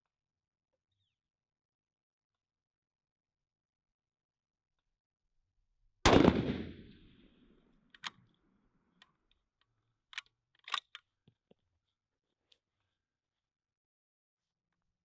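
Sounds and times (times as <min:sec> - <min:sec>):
rifle bolt metallic clicks: 0:06.1 - 0:06.9, 0:10.1 - 0:11.0
rifle shot with echo: 0:06.1 - 0:07.3.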